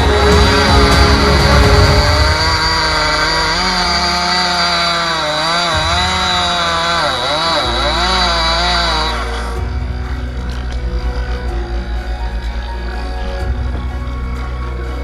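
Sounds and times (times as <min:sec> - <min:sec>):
chainsaw cutting wood: 0:00.2 - 0:09.6.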